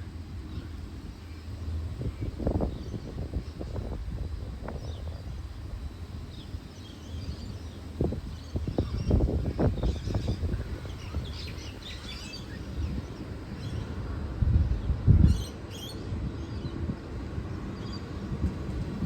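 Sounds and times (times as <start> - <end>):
steady low rumble: 0.0 - 15.4
birds chirping: 4.6 - 14.0.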